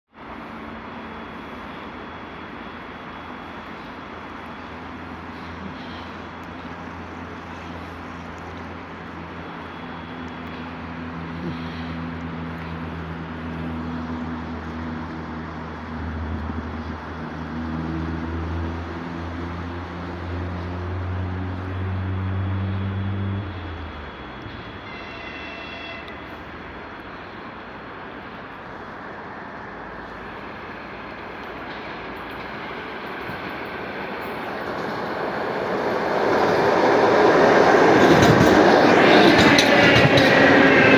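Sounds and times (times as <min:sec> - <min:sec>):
electric train hum: 0:00.1 - 0:40.9
high-pitched tonal signal: 0:22.2 - 0:26.8.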